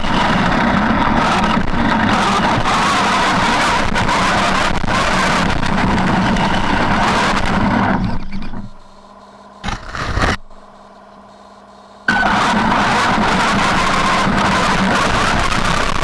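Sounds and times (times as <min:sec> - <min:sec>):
electric rc truck motor running: 0:09.6 - 0:10.6
rough-terrain noise: 0:09.6 - 0:10.6.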